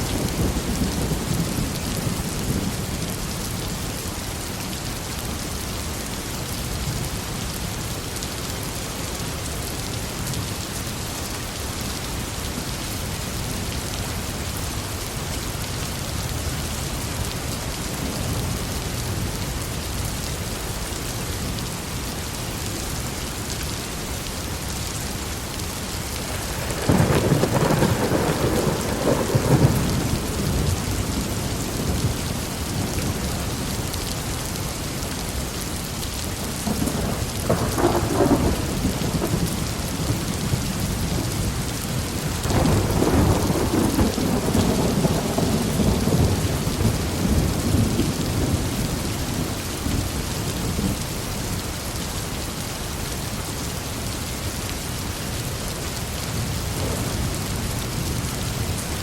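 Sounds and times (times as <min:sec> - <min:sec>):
heavy rain: 0:00.0 - 0:59.0
thunder rumbling: 0:26.2 - 0:33.8, 0:36.5 - 0:50.0, 0:56.7 - 0:58.6.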